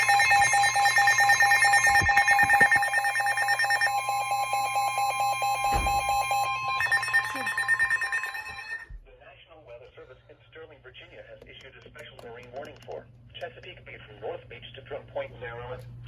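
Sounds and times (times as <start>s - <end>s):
pulsing electronic alert tone: 0.0s - 8.8s.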